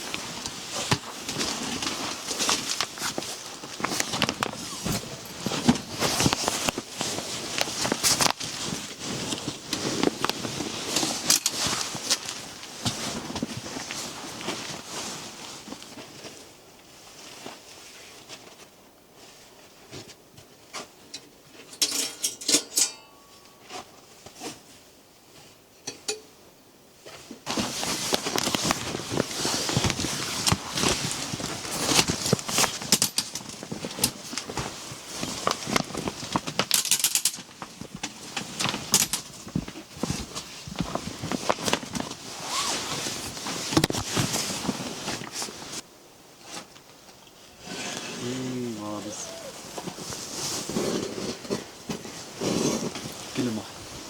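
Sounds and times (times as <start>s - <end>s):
crunching and rustling: 0.0s - 20.9s, 27.0s - 45.8s
handling clicks and knocks: 31.9s - 34.5s, 35.6s - 39.8s.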